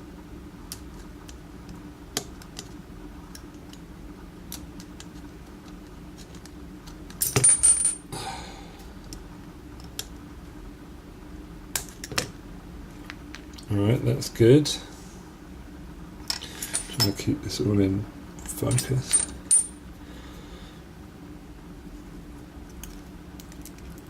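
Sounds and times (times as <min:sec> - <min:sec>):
metallic scraping and clinking: 0:16.3 - 0:17.3, 0:18.4 - 0:19.8.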